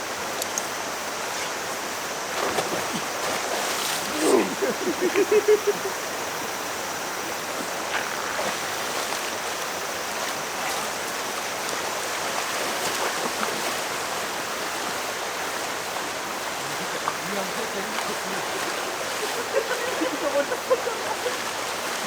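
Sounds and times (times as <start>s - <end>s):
stream rushing over rocks: 0.0s - 22.0s
person's voice: 4.1s - 5.3s.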